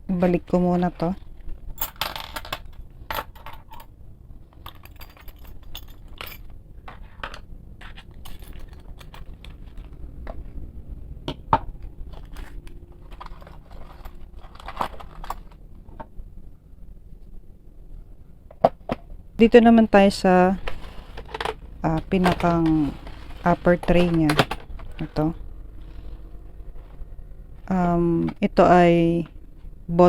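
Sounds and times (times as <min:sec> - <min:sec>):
metal tools clinking: 0:01.8 - 0:03.9, 0:04.5 - 0:09.9, 0:12.1 - 0:15.6, 0:20.6 - 0:25.3.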